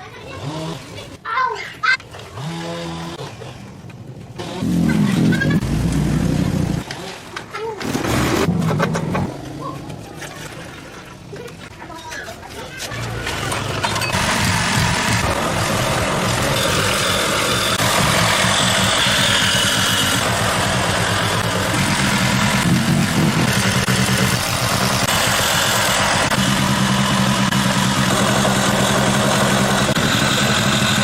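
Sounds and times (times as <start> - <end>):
small generator engine running: 4.4 - 7.2, 13.2 - 31.0.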